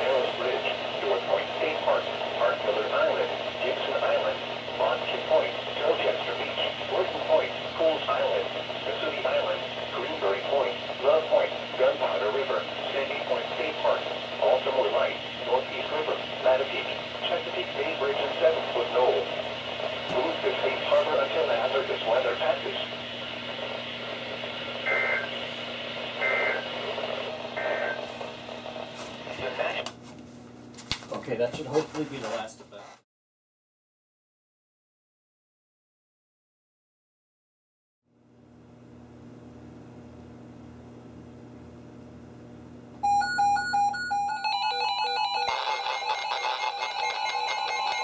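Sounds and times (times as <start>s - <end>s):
radio hiss and hum: 0.0s - 30.1s, 45.2s - 48.0s
overlapping alarm beeps: 24.9s - 25.3s, 26.2s - 26.7s, 27.6s - 28.0s, 43.0s - 48.0s.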